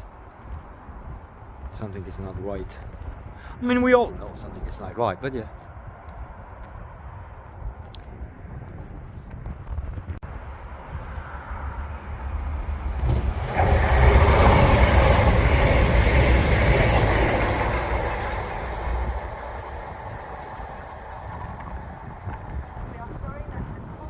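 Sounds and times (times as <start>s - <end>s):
train passing: 10.3s - 23.6s
rail hissing: 13.0s - 22.8s.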